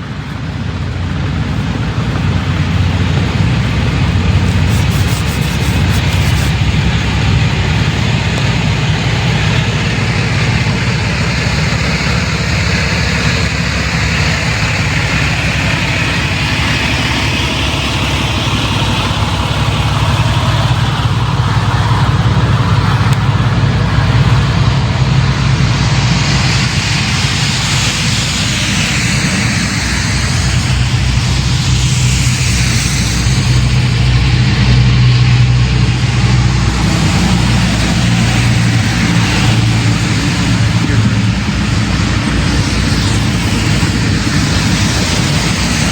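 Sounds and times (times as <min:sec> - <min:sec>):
diesel engine drone: 0:00.0 - 0:45.9
road noise: 0:00.0 - 0:45.9.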